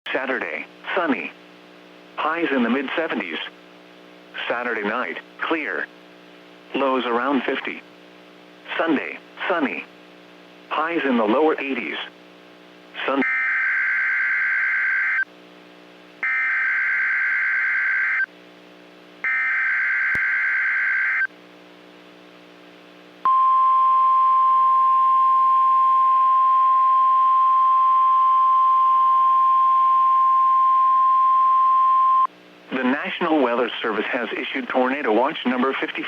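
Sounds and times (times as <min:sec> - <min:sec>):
steady warning alarm tone: 0:16.2 - 0:18.3, 0:19.2 - 0:21.3.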